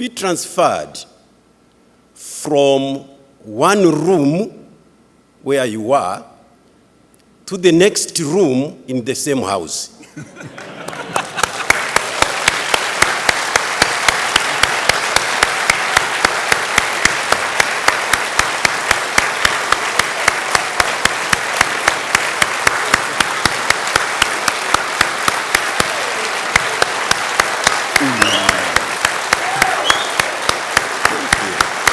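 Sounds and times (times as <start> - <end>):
congregation applauding: 10.6 - 31.9
nearby person clapping: 10.9 - 31.9.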